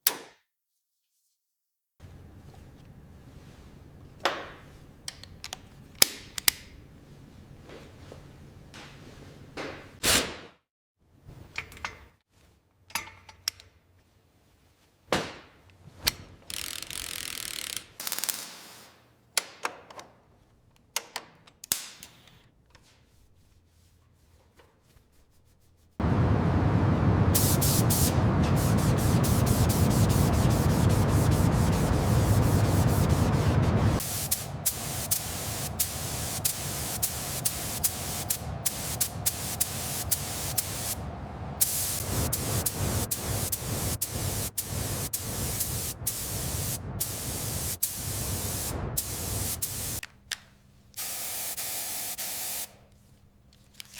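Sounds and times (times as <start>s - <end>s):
loud mechanical running noise: 26.0s - 49.8s.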